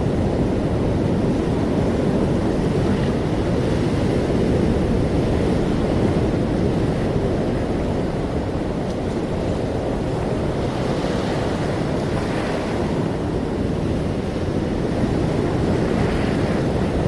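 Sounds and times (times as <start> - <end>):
ocean waves and surf: 0.0 - 17.0.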